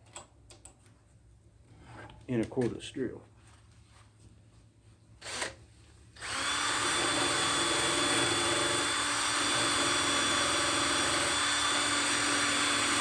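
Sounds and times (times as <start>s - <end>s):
cordless drill whining: 5.2s - 5.6s, 6.2s - 13.0s.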